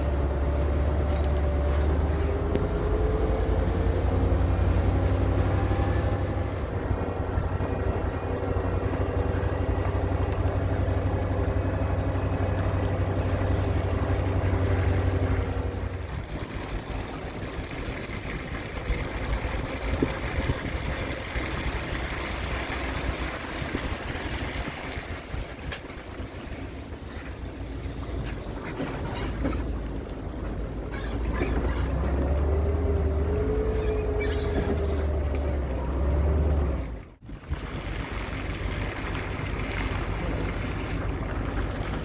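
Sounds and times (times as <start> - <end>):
road noise: 0.0 - 42.0
truck engine hum: 0.0 - 42.0.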